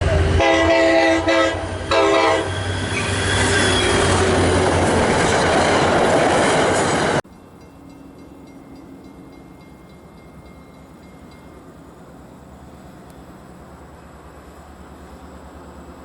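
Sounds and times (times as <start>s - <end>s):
locomotive air horn: 0.0s - 4.6s
train running past: 0.0s - 16.0s.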